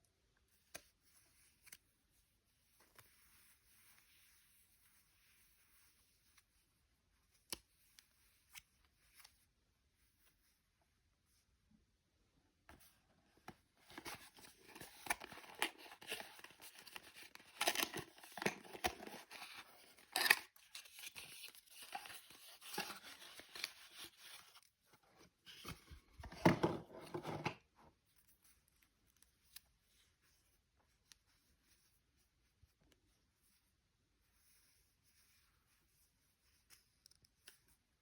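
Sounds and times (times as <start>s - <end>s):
plastic packaging tearing: 14.6s - 24.0s.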